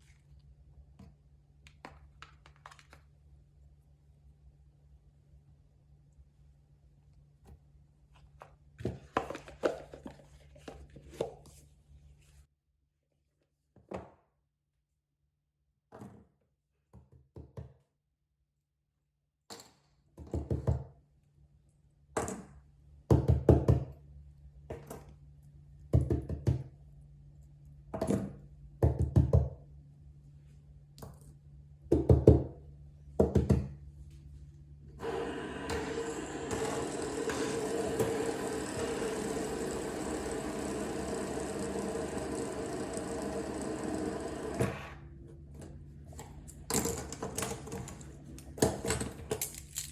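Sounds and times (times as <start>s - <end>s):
plastic toys knocking and clicking: 46.6s - 49.9s.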